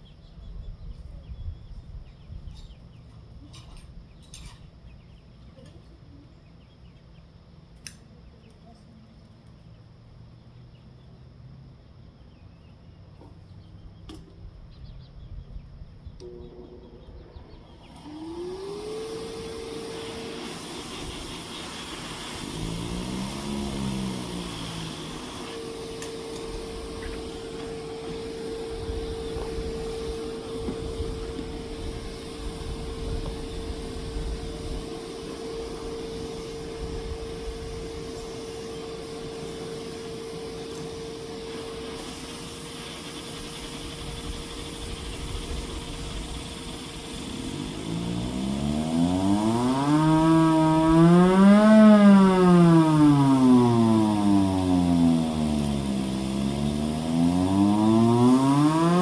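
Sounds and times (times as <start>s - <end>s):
blower whining: 16.0s - 59.0s
hand-crank siren wailing: 16.2s - 59.0s.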